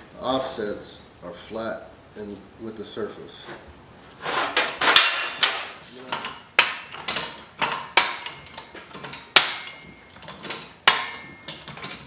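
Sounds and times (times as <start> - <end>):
metal tools clanking on workbench: 4.3 - 12.0.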